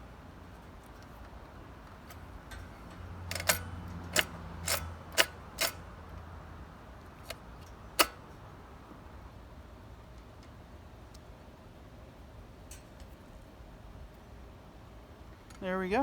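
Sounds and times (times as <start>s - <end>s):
small parts clicking: 0.8s - 6.3s, 7.1s - 8.2s.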